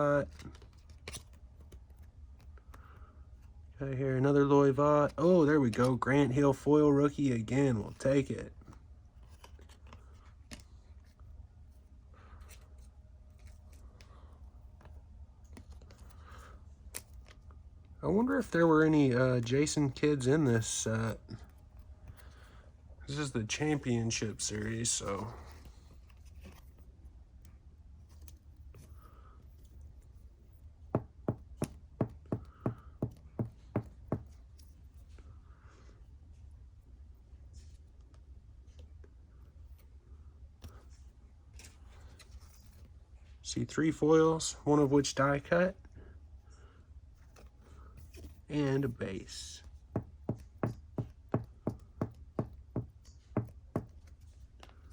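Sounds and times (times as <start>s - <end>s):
cards clicking and rustling: 0.0s - 3.1s, 7.8s - 11.3s
low steady hum: 0.0s - 54.9s
quick evenly spaced knocks: 30.9s - 34.4s, 49.8s - 54.2s.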